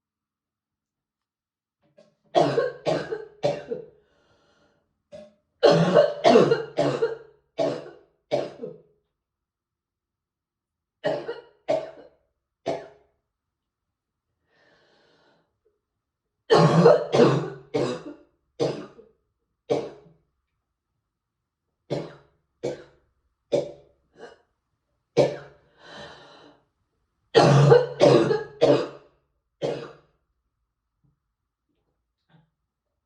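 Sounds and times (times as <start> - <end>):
person coughing: 2.4 - 3.9, 5.6 - 8.8, 11.0 - 12.1, 16.5 - 19.0, 27.4 - 30.1.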